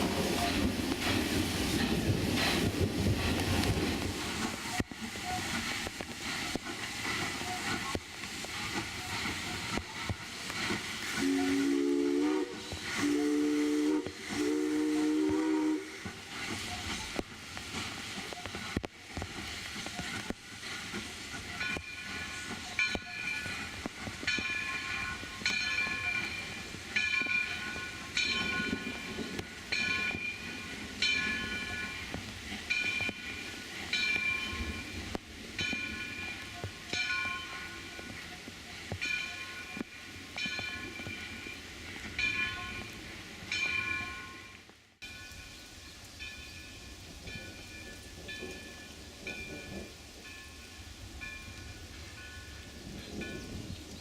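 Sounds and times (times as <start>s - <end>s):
steam hissing: 0.0s - 53.7s
steam whistle blasts: 11.1s - 17.2s.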